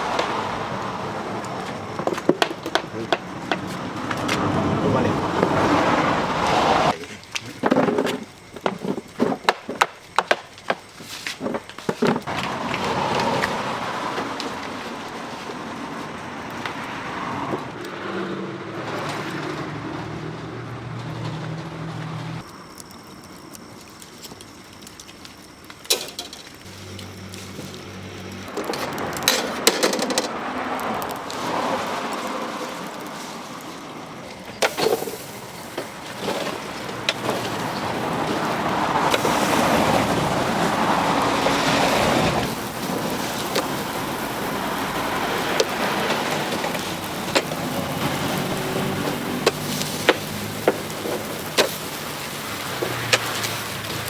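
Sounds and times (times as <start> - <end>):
crackles and pops: 0.0 - 18.0, 22.4 - 54.0
chicken sizzling on grill: 22.4 - 54.0.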